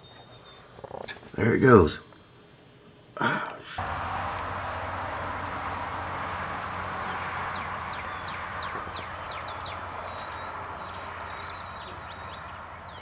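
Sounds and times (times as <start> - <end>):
low hum: 3.8 - 13.0
high falling bird chirps: 4.0 - 13.0.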